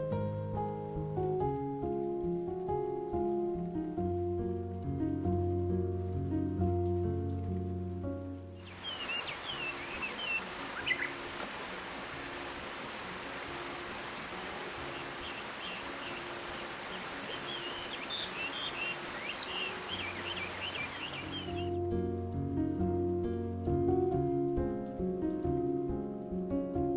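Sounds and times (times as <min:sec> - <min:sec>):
river water rushing: 0:08.6 - 0:21.7
small birds chirping: 0:08.6 - 0:21.8.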